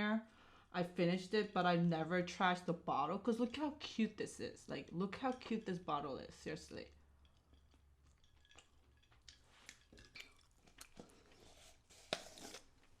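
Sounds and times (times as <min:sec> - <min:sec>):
faint chewing: 0:07.0 - 0:13.0
wet mouth clicks: 0:07.2 - 0:11.3.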